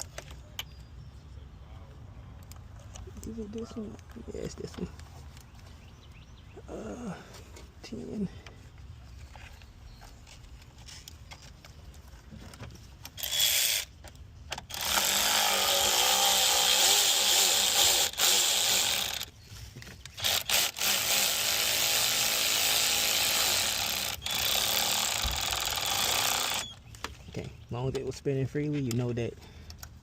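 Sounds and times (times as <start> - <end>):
cordless power tool spinning bolt: 13.0 - 26.8.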